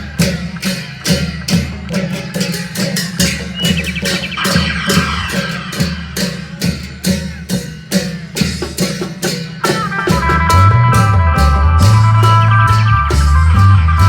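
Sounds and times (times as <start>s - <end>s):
steady drumbeats: 0.0s - 14.0s
loud bass line: 10.1s - 14.0s.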